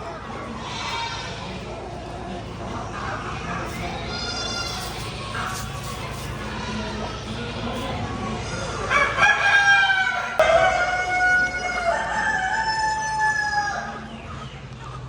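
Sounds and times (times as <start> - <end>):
rooster crowing: 8.9 - 14.1.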